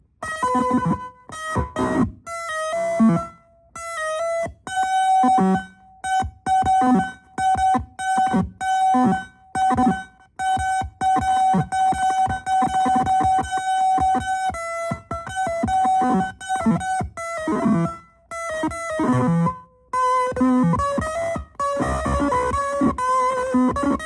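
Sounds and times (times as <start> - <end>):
glitchy fuzz electric guitar: 0.3 - 2.1, 2.7 - 3.3, 10.6 - 24.0.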